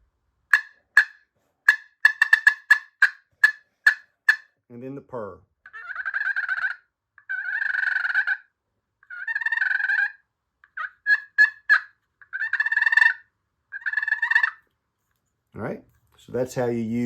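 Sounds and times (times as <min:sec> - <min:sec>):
turkey call purring: 0:00.5 - 0:04.5, 0:05.7 - 0:14.6.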